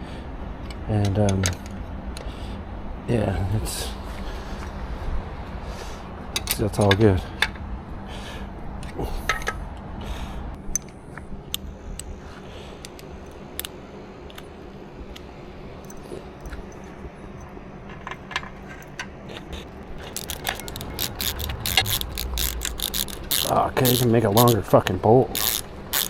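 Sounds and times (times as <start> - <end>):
faint steady hum: 0.0 - 26.0
ratchet wrench clicking: 19.6 - 24.7, 25.3 - 26.0.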